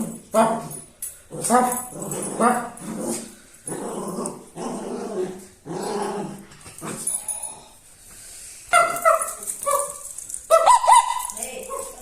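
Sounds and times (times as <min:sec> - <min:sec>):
dog growling: 0:01.3 - 0:07.7
dog barking: 0:08.7 - 0:12.0.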